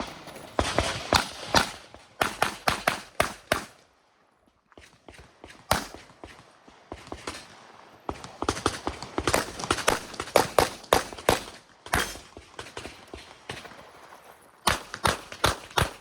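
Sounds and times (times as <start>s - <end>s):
rapid pistol shots: 0.0s - 3.8s, 5.4s - 6.4s, 7.0s - 13.6s, 14.7s - 16.0s.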